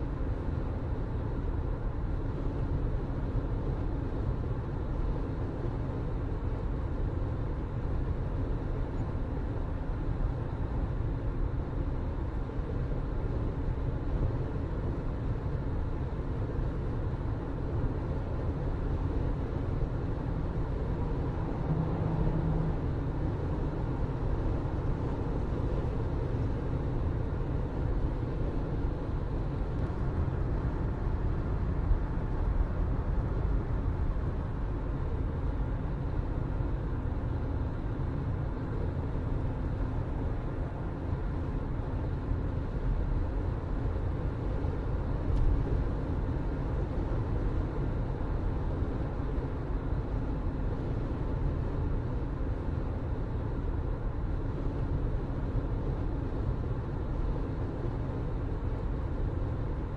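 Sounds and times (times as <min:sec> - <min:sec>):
vehicle rumbling in motion: 0:00.0 - 0:59.9.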